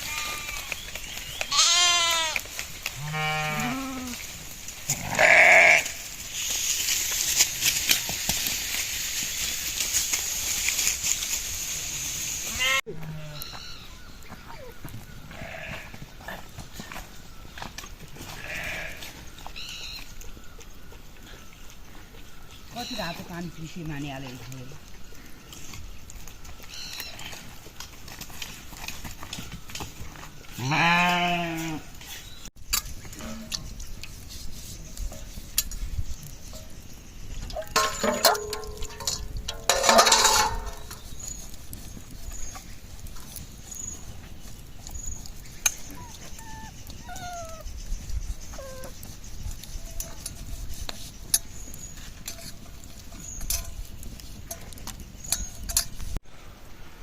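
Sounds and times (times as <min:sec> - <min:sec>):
sheep bleating: 0:00.0 - 0:00.7, 0:01.5 - 0:02.4, 0:03.0 - 0:04.2, 0:04.9 - 0:06.0, 0:15.3 - 0:16.0, 0:18.4 - 0:19.0, 0:30.6 - 0:31.8.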